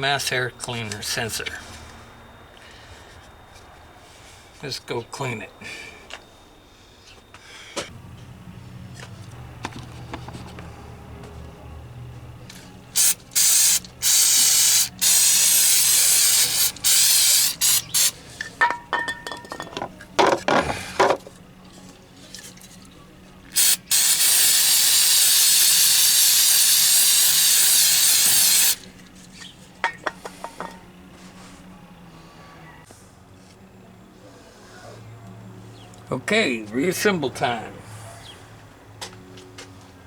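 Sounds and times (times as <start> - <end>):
aerosol can spraying: 13.0 - 18.2, 23.5 - 28.8.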